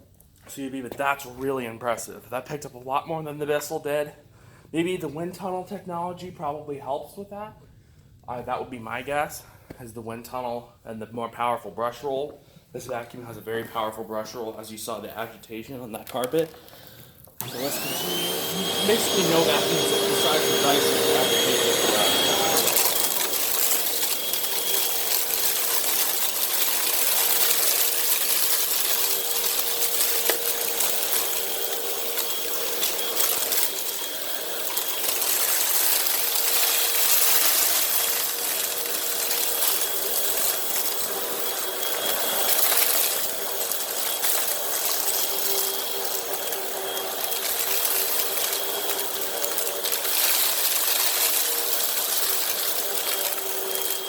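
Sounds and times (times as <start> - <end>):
debris rattling through vacuum: 17.4 - 54.0
vacuum cleaner motor whine: 17.4 - 54.0.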